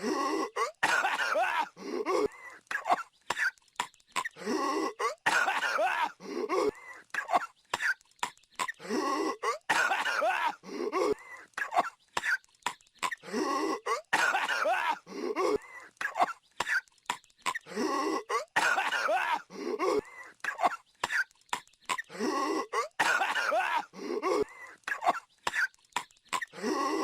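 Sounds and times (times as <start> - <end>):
sharp clicks: 1.7 - 4.5, 6.2 - 8.9, 19.5 - 22.2, 23.9 - 27.0
cartoon character coughing: 13.8 - 16.8, 18.2 - 21.3, 21.9 - 25.7.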